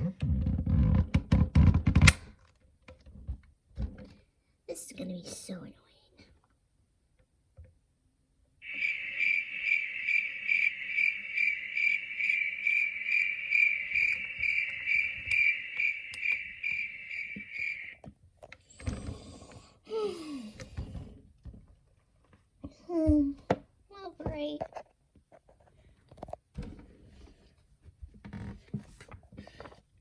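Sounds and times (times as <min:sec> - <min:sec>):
cricket chirping: 0:08.6 - 0:18.0.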